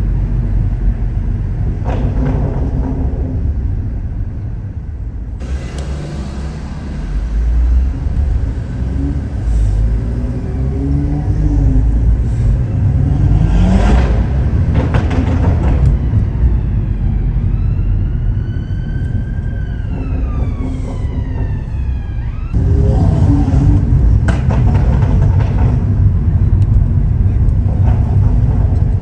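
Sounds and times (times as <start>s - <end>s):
car engine rumbling under load: 0.0s - 29.0s
sharp exhaust cracks: 1.6s - 29.0s
siren wailing: 15.2s - 23.9s.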